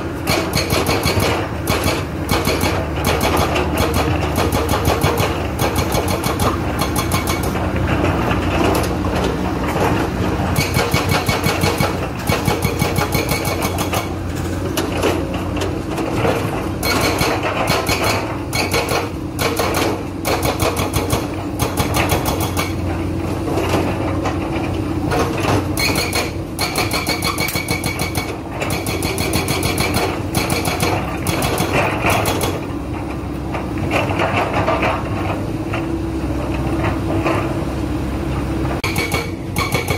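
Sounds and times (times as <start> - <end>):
diesel engine running: 0.0 - 39.9
hydraulic breaker hammering: 0.2 - 7.7, 10.5 - 14.2, 16.4 - 22.8, 25.2 - 32.7, 38.8 - 39.9.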